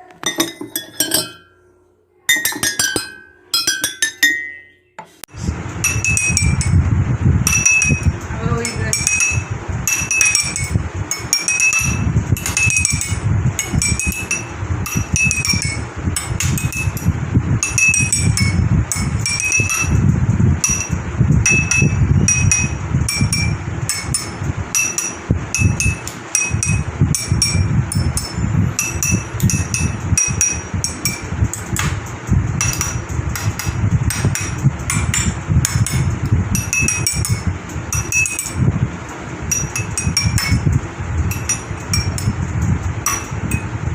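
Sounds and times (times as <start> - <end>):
water glasses clinking: 0.2 - 1.6, 2.3 - 4.8.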